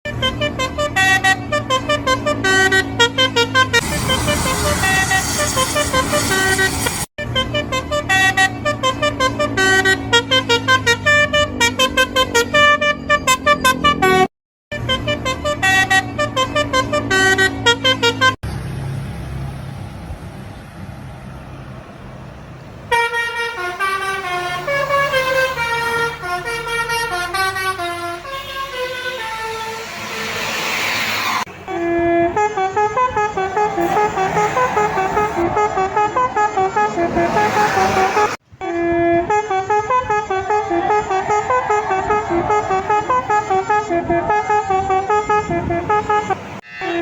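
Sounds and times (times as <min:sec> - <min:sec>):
melodic bus horns: 0:00.0 - 0:18.4, 0:22.8 - 0:47.0
bus engine running: 0:00.1 - 0:46.6.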